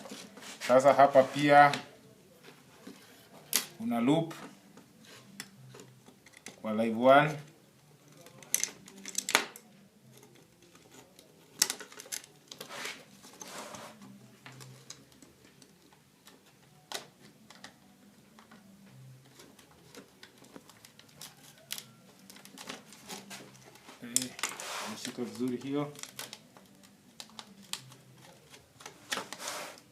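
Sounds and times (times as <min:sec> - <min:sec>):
wire scraping: 0:10.1 - 0:15.0, 0:27.3 - 0:29.9.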